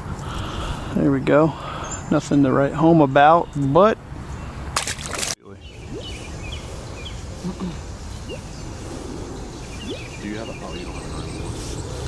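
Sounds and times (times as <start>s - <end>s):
wind rumble on microphone: 5.7s - 12.0s
small animals chirping: 5.8s - 12.0s
rustling hiss: 6.0s - 12.0s.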